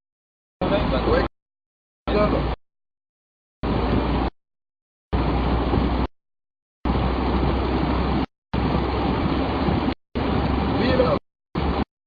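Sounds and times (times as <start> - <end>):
car road noise: 3.6 - 4.3, 5.1 - 6.1, 6.9 - 11.9.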